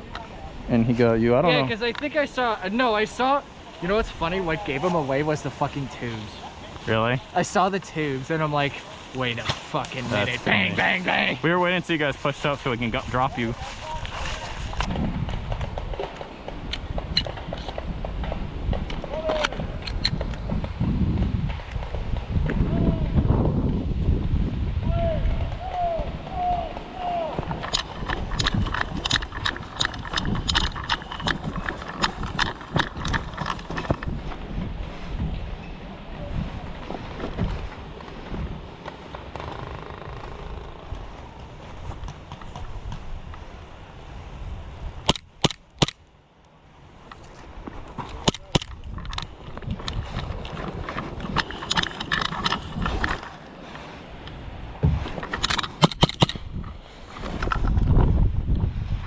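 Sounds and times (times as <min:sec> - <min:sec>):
footsteps crunching on dry ground: 0:03.5 - 0:17.1, 0:36.3 - 0:44.8
footsteps crunching on gravel: 0:08.1 - 0:14.9
wind rumble on microphone: 0:09.2 - 0:45.9, 0:46.8 - 0:59.0.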